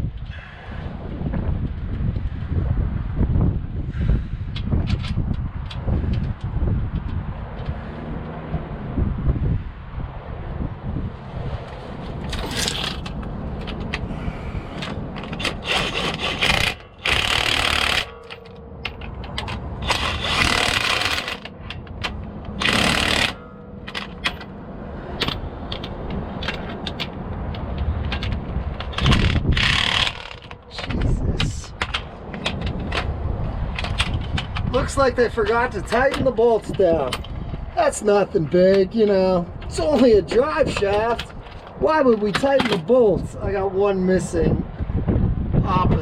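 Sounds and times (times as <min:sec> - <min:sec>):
metal scraping and clicking: 0:12.1 - 0:14.1, 0:14.7 - 0:24.6, 0:25.2 - 0:37.4
loud metal scraping bursts: 0:14.2 - 0:24.3, 0:28.8 - 0:34.3.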